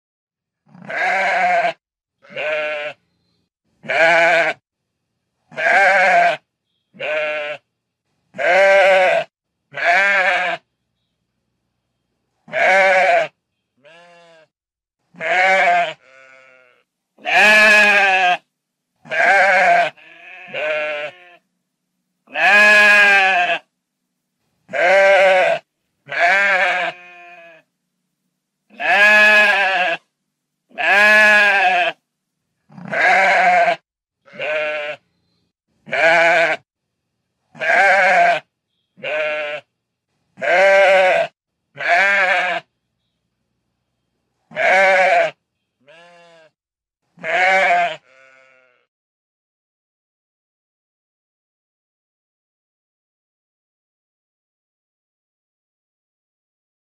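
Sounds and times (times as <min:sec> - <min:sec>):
sheep bleating: 0:00.6 - 0:03.0, 0:03.8 - 0:04.6, 0:05.5 - 0:07.7, 0:08.3 - 0:10.7, 0:12.5 - 0:21.4, 0:22.3 - 0:23.7, 0:24.7 - 0:27.7, 0:28.7 - 0:30.1, 0:30.7 - 0:32.0, 0:32.7 - 0:35.0, 0:35.8 - 0:36.7, 0:37.5 - 0:39.7, 0:40.4 - 0:42.7, 0:44.5 - 0:46.6, 0:47.2 - 0:48.9.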